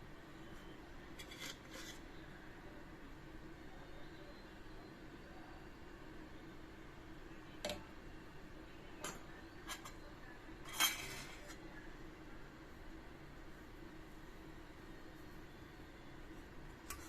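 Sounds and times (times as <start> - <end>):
utensils clinking against dishes: 9.0 - 10.0, 10.6 - 11.6
utensils clattering: 10.7 - 11.6.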